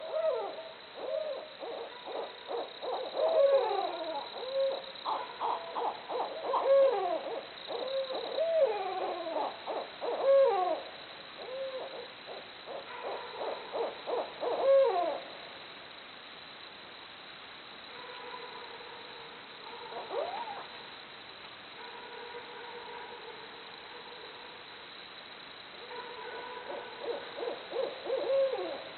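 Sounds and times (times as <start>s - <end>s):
owls hooting and calling: 0.0s - 10.8s, 11.4s - 15.3s, 19.9s - 20.6s, 26.7s - 28.9s.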